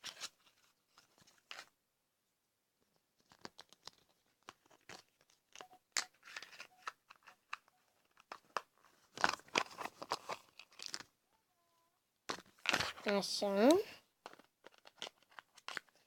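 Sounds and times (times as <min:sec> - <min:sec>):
plastic packaging crinkling and tearing: 0:08.1 - 0:11.1, 0:12.4 - 0:13.1, 0:14.3 - 0:16.0.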